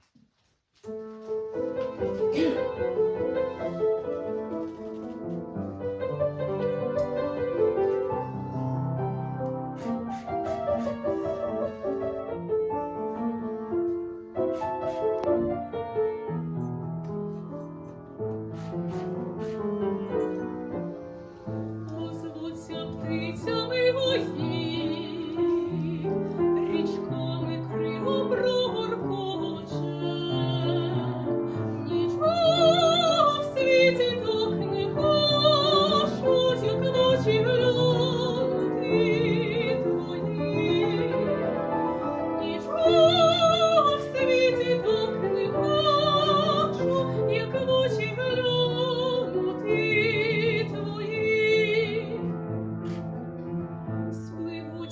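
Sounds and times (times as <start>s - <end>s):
piano accompaniment: 0.7s - 54.9s
woman singing operatically: 21.9s - 41.2s, 42.4s - 52.2s, 54.2s - 54.9s.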